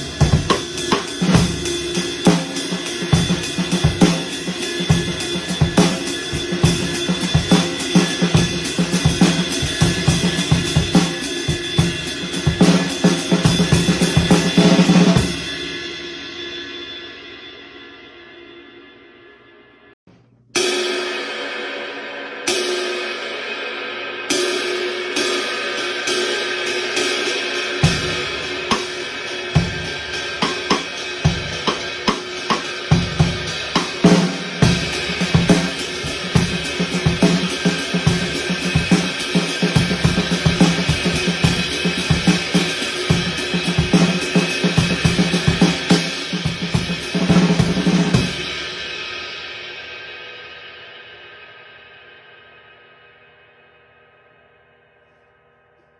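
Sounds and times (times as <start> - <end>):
drum kit groove: 0.0 - 16.5, 24.3 - 50.1
cymbal crashes: 0.0 - 19.9, 20.6 - 54.7.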